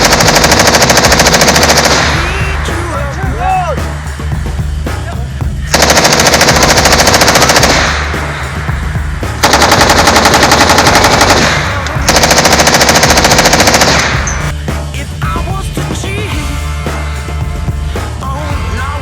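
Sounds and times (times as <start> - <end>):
automatic machine-gun fire: 0.0 - 2.8, 5.7 - 8.6, 9.3 - 14.5.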